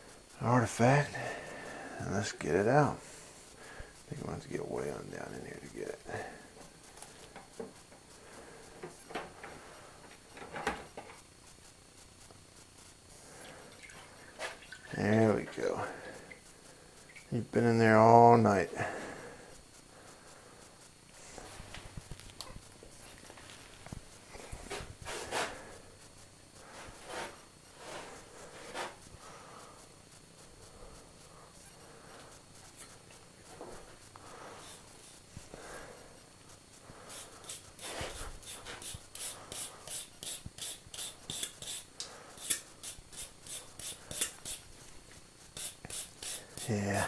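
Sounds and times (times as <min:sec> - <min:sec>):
brush scrubbing metal: 0:37.1 - 0:44.7, 0:45.5 - 0:47.0.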